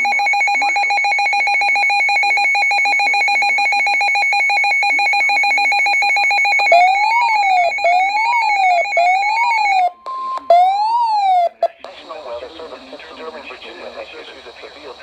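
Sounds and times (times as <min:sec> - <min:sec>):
pulsing alarm tone: 0:00.0 - 0:11.6
siren-like wail: 0:06.7 - 0:11.6.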